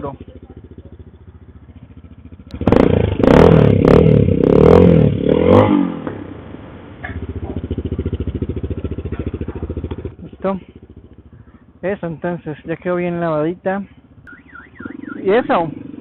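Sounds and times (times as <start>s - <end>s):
motorcycle engine idling and revving: 0.0s - 16.0s.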